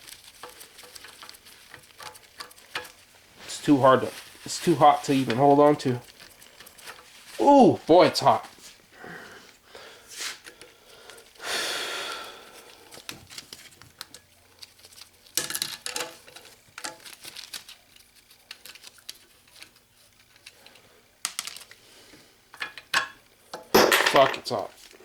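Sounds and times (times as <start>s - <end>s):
rustling: 0.0s - 11.4s, 12.1s - 22.4s.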